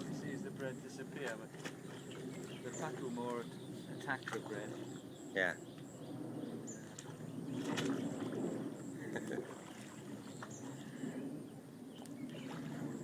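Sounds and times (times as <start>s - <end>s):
water splashing and slurping: 0.0s - 5.2s, 6.5s - 13.0s
short sharp splashes: 1.2s - 3.4s, 6.8s - 8.6s.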